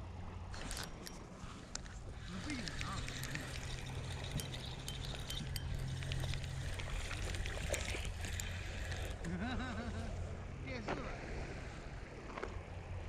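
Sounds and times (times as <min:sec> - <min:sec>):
steady low hum: 0:00.0 - 0:13.0
small clicks and ticks: 0:00.6 - 0:10.2.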